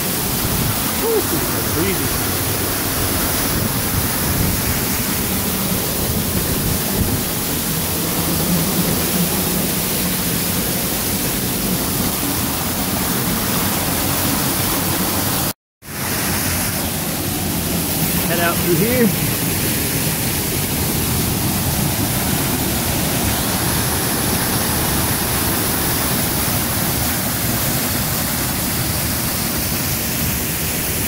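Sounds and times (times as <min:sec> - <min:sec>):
waterfall pouring and splashing: 0:00.0 - 0:31.0.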